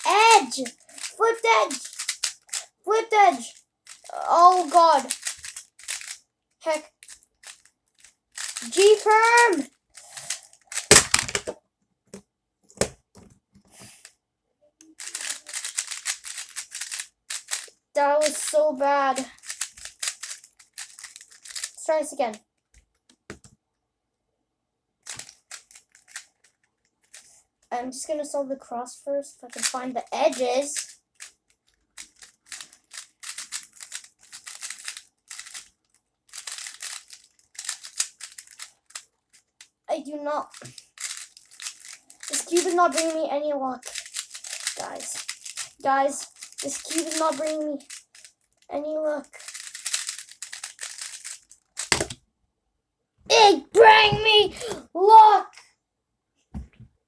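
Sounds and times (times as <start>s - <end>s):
puzzle cube clacking: 0.0s - 2.6s, 3.9s - 6.2s, 7.0s - 9.6s, 10.2s - 11.6s, 14.9s - 18.4s, 19.4s - 21.8s, 32.0s - 35.7s, 36.3s - 38.7s, 41.0s - 43.1s, 43.8s - 45.7s, 46.3s - 48.2s, 49.4s - 52.2s, 53.3s - 55.4s.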